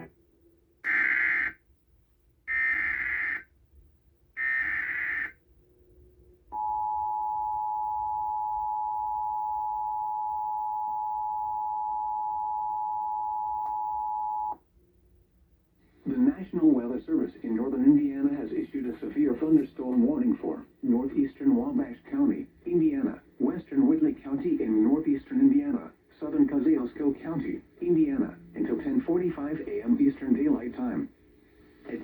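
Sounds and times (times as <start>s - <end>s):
screeching data bursts: 4.4s - 5.4s.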